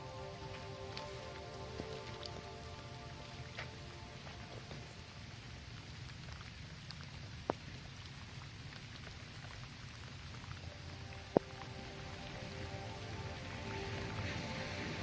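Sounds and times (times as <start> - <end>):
heavy rain on a road: 0.0 - 15.0
single raindrops tapping: 5.8 - 15.0.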